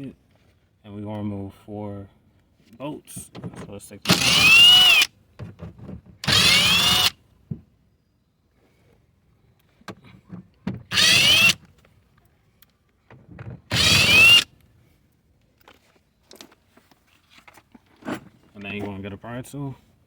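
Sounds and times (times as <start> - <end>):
cordless drill motor whine: 4.1 - 5.1, 6.2 - 7.2, 10.9 - 11.6, 13.7 - 14.5.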